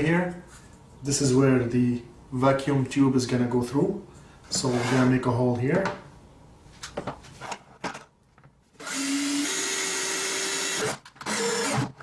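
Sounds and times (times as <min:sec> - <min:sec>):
electric drill whining: 0:08.8 - 0:12.0.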